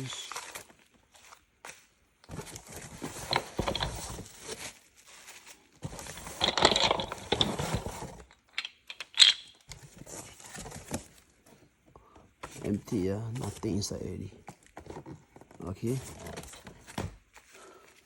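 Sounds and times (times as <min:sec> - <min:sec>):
small parts clattering: 0:02.3 - 0:04.8, 0:05.8 - 0:11.0.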